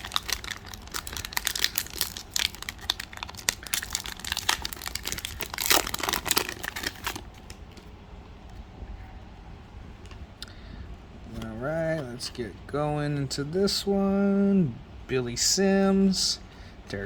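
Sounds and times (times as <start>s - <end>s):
plastic wrapper crinkling and tearing: 0.0s - 7.8s.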